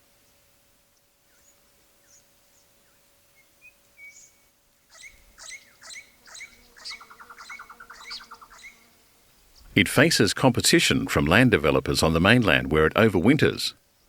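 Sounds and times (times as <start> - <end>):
parrots calling: 4.9 - 8.8.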